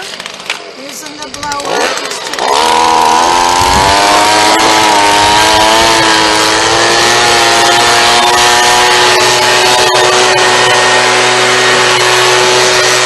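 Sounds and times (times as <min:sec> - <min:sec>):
blower running at high speed: 0:01.3 - 0:13.0.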